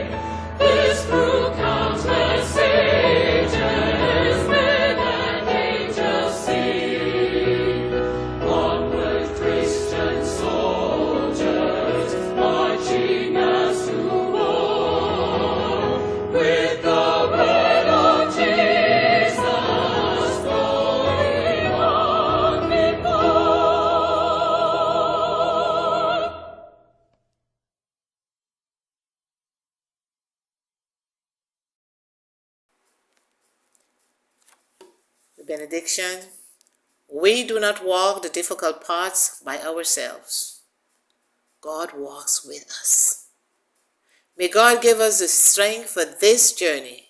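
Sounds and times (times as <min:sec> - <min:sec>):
sustained accompaniment: 0:00.0 - 0:26.6
choir singing a hymn: 0:00.0 - 0:26.7.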